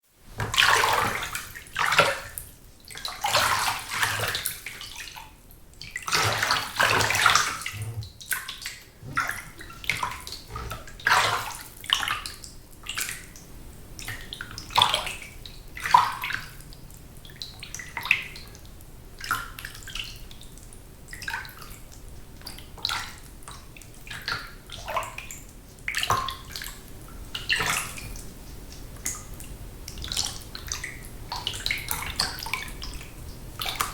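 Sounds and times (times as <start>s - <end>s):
water sloshing in bathtub: 0.4s - 5.2s, 5.9s - 12.2s
water trickling: 5.9s - 11.6s.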